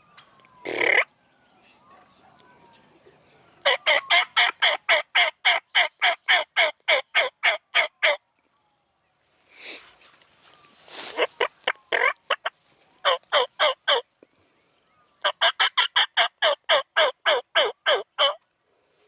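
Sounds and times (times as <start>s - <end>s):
turkey yelping: 0.6s - 1.1s, 3.6s - 8.2s, 11.1s - 14.0s, 15.2s - 18.4s
soft rustling: 9.2s - 11.6s, 12.5s - 13.0s.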